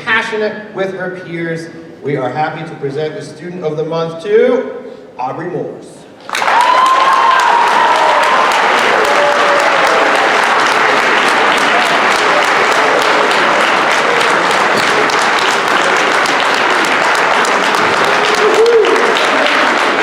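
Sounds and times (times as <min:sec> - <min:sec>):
audience applauding: 0:06.3 - 0:20.0.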